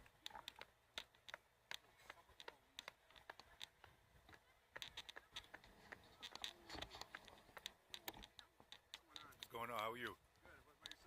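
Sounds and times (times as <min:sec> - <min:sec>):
faint sharp clicks: 0:10.8 - 0:11.0.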